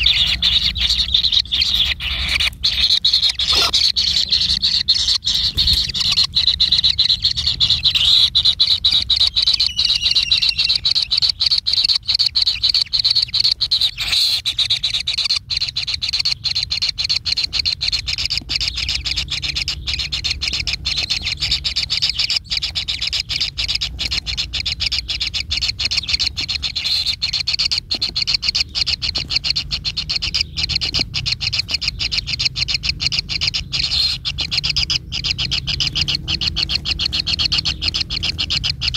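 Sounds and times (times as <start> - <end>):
animal pulsing rasp: 0.0 - 6.8.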